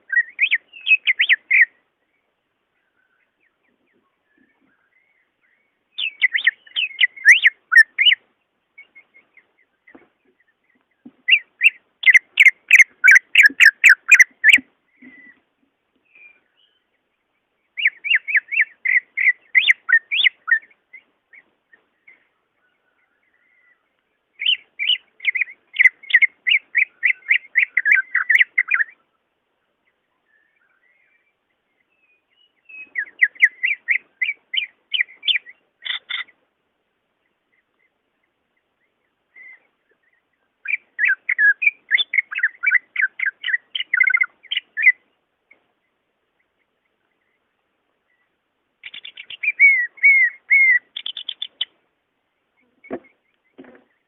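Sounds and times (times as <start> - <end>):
bird chattering song: 0.0 - 36.4, 37.1 - 54.0
soft bird chirps: 0.0 - 54.0.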